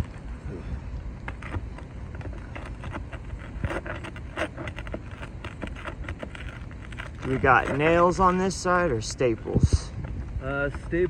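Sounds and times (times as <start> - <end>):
steady low rumble: 0.0 - 11.0
roof shingles scraping and clicking: 1.2 - 9.2.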